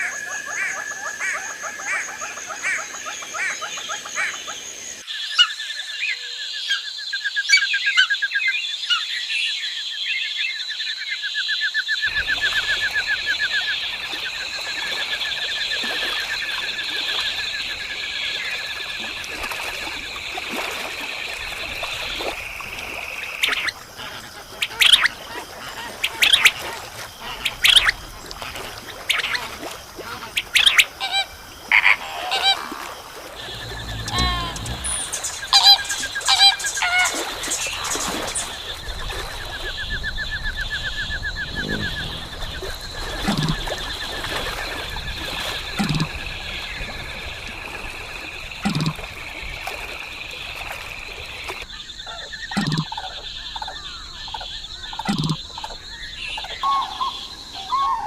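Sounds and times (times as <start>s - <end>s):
birds trilling and chirping: 30.2s - 46.0s
sharp bird calls: 33.4s - 38.6s.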